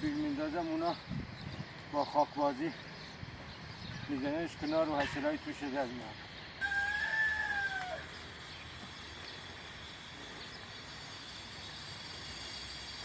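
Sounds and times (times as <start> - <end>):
rooster crowing: 6.6 - 8.4.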